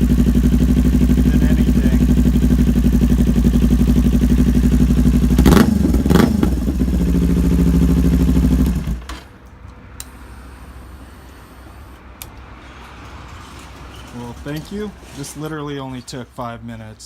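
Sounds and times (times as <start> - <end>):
motorcycle engine idling and blipped: 0.0 - 12.4.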